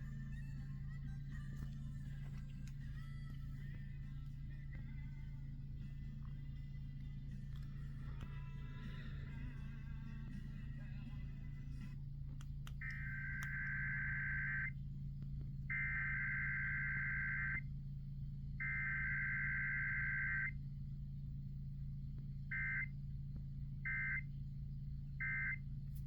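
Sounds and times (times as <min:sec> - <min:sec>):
buzzy warbling modem data bursts: 0:12.9 - 0:14.7, 0:15.7 - 0:17.6, 0:18.6 - 0:20.5.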